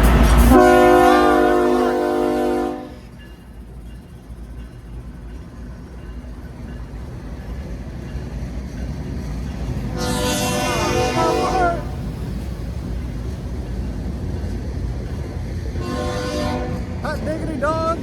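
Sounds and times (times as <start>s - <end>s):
freight train rumbling: 0.0s - 18.0s
train horn: 0.4s - 3.1s, 9.9s - 12.0s, 15.8s - 17.0s.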